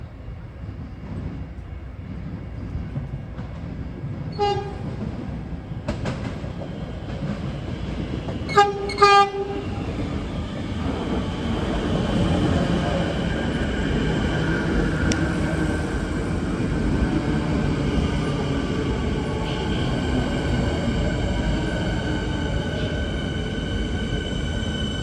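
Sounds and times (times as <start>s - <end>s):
train rumble: 0.0s - 25.0s
train horn toots: 4.4s - 4.9s, 8.5s - 9.7s, 19.4s - 20.4s.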